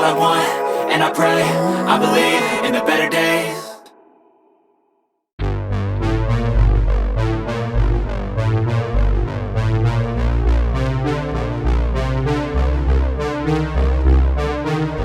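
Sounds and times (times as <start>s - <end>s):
electronic synthesizer music: 0.0s - 4.2s.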